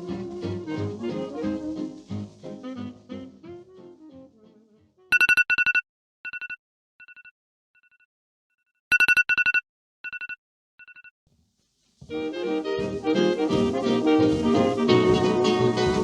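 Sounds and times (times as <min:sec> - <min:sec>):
two-tone telephone ringtone: 0:05.1 - 0:08.0, 0:08.9 - 0:11.1.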